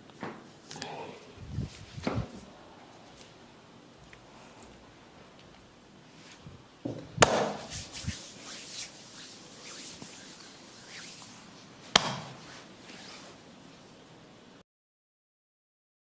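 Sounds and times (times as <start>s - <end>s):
hands rubbing skin and hair: 1.4s - 3.4s, 7.2s - 13.4s.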